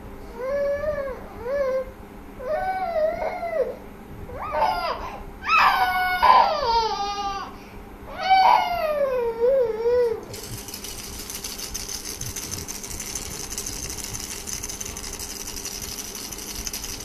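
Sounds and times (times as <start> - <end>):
baby crying: 4.4 - 10.3.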